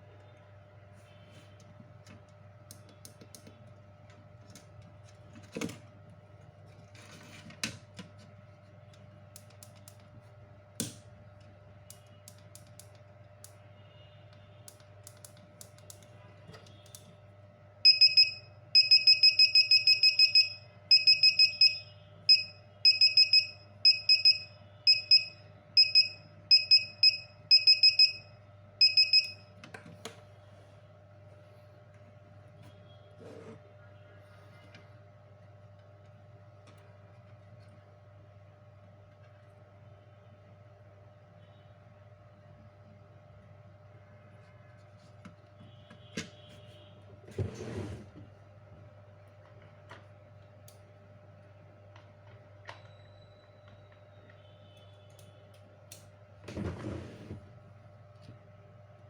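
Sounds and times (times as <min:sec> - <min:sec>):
alarm buzzer beeping: 0:17.8 - 0:29.5.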